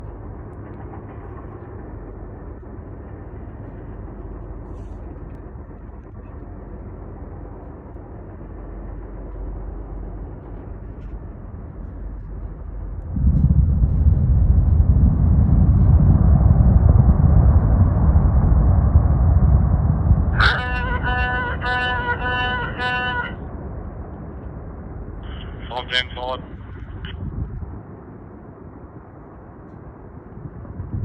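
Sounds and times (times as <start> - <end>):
deep blast rumble: 0.0 - 29.2, 30.0 - 31.0
low background rumble: 0.0 - 31.0.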